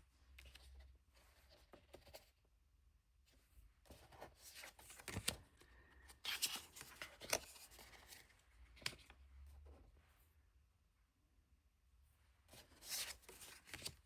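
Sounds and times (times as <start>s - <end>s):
cards sliding and rustling: 6.1s - 9.2s, 12.6s - 14.0s.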